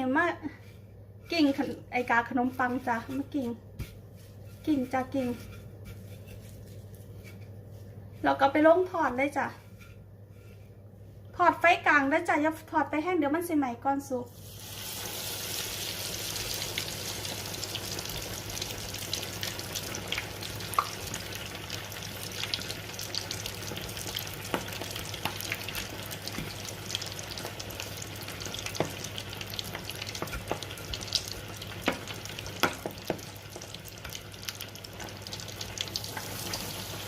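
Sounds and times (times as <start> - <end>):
low steady hum: 0.0 - 37.0
food deep-frying in oil: 14.1 - 37.0.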